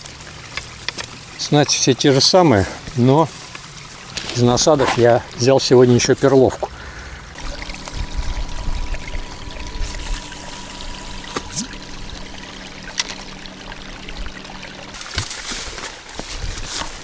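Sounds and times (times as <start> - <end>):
water trickling and pouring: 0.0 - 17.0
faint low hum: 7.4 - 15.0.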